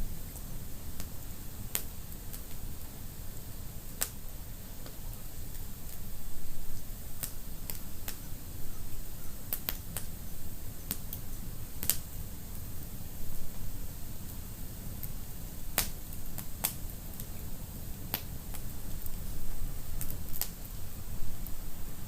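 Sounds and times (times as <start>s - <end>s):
low rumble of burning: 0.0s - 22.0s
wood fire pops and snaps: 1.0s - 2.6s, 4.0s - 4.2s, 4.8s - 6.1s, 7.2s - 8.2s, 9.5s - 10.2s, 10.9s - 11.2s, 11.8s - 12.1s, 15.8s - 17.5s, 18.1s - 19.2s, 19.8s - 20.8s.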